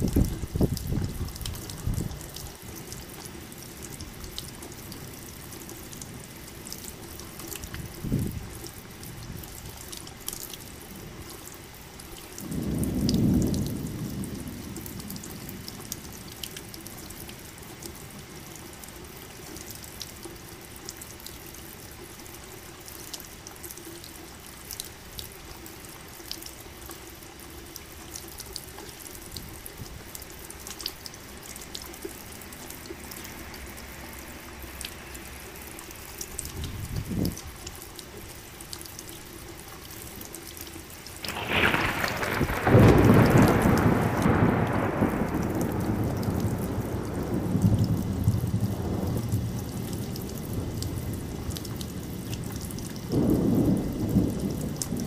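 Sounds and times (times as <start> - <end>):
dripping water: 0.0 - 55.0
steady rain: 0.0 - 55.0
thunder rumble: 12.4 - 16.2, 41.2 - 55.0
loud thunderclap: 12.5 - 14.7, 41.2 - 49.6, 53.1 - 55.0.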